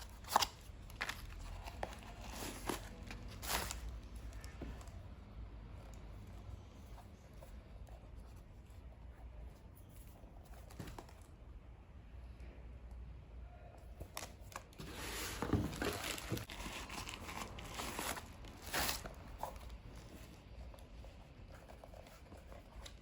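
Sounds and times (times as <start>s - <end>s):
packaging crinkling and tearing: 14.1s - 19.8s.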